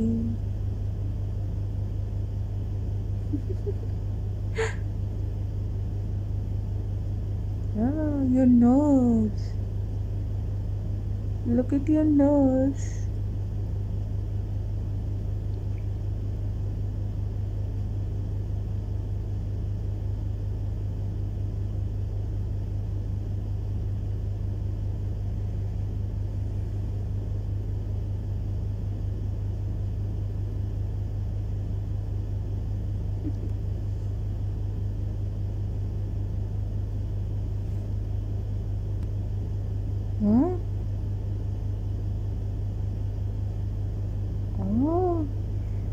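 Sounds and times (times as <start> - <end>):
low fluttering hum: 0.0 - 45.9.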